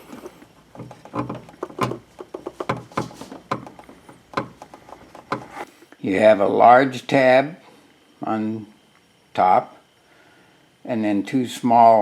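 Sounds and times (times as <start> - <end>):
plastic clicks and scrapes: 0.0 - 5.7.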